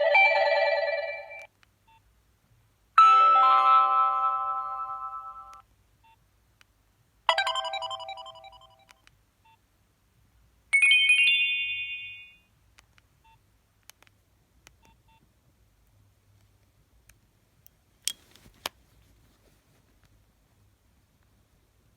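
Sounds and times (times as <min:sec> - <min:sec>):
phone alert chimes: 0:00.0 - 0:01.5, 0:07.3 - 0:08.9.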